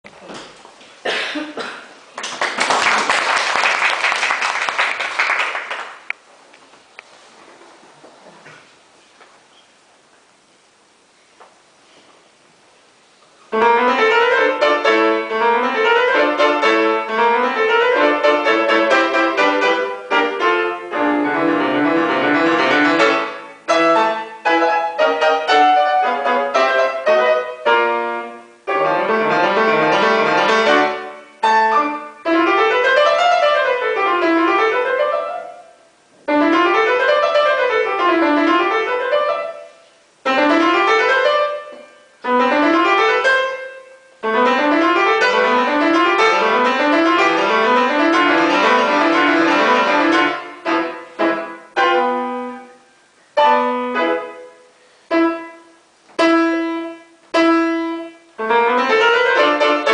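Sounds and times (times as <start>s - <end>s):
solo piano playing fast: 13.5s - 52.8s, 53.4s - 59.9s.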